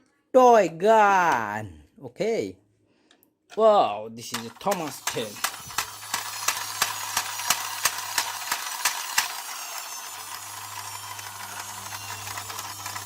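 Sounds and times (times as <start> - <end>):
toy train mechanism clicking: 4.3 - 13.0.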